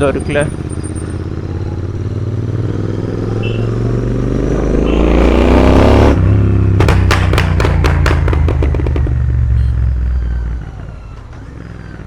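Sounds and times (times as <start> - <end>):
motorcycle engine accelerating: 0.0 - 12.0
exhaust pops and bangs: 6.6 - 9.5.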